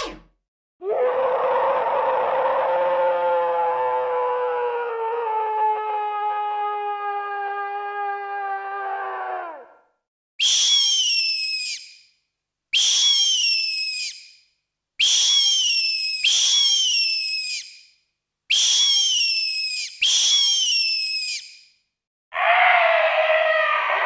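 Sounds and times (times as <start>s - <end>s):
synthetic creature shriek: 0.0s - 3.3s, 22.3s - 24.0s.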